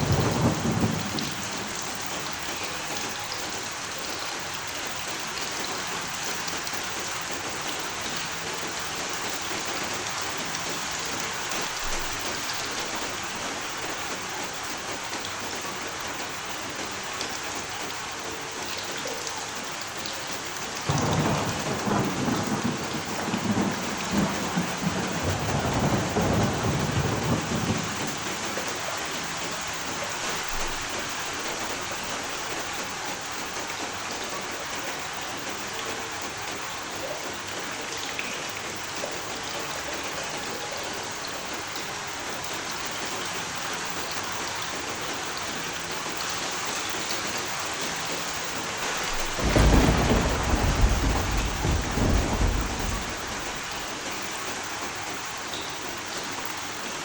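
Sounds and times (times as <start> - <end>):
thunder rumbling: 0.0 - 3.2, 20.9 - 29.8, 48.4 - 54.5
heavy rain falling: 0.0 - 57.0.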